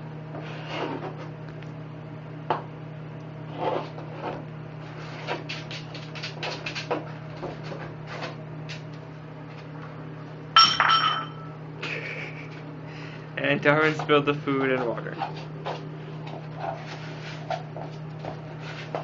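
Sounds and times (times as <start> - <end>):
steady low hum: 0.0 - 19.0
loud ringing clang: 10.6 - 11.6.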